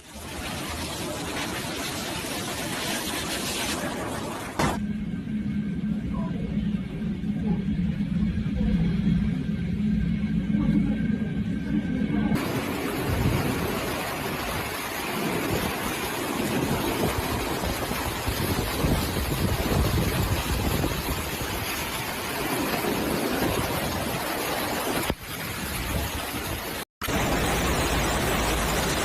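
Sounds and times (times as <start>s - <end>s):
wind buffeting microphone: 12.2s - 26.8s
surf rushing: 12.4s - 29.0s.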